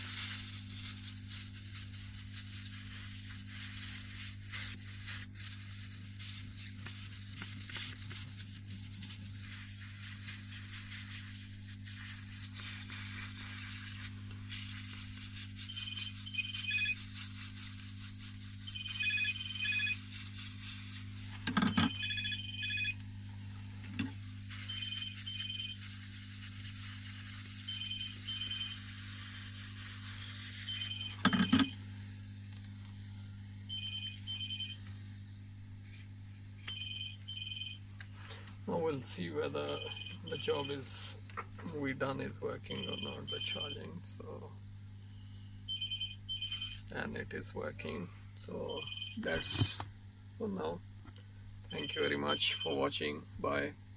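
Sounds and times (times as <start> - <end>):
hot-air blower hissing: 0.0 - 15.7
electronic beeping tune: 15.6 - 17.0, 18.6 - 20.0, 21.7 - 23.0, 27.7 - 28.8, 30.6 - 31.8, 39.7 - 40.8, 48.7 - 49.4, 51.7 - 52.9.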